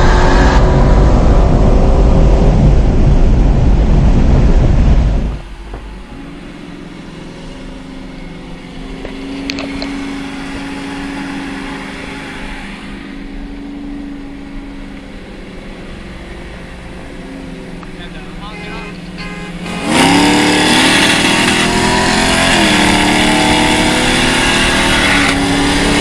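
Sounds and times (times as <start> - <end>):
car engine at full throttle: 0.0 - 26.0
car engine running at light load: 0.0 - 26.0.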